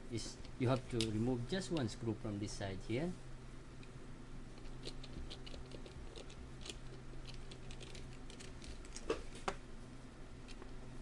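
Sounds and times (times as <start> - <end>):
steady low hum: 0.0 - 11.0
small metal parts clicking: 4.6 - 9.0.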